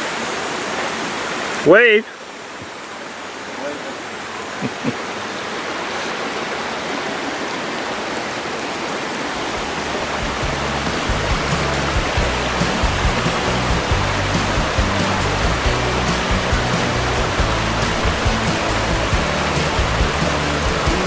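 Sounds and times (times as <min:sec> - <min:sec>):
waterfall rushing: 0:00.0 - 0:21.0
background music with bass: 0:09.8 - 0:21.0.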